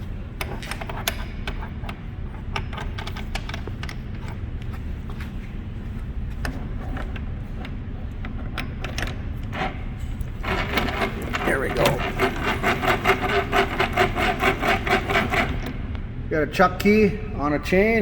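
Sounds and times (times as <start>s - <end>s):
rubbing scraping sound: 10.3s - 15.6s.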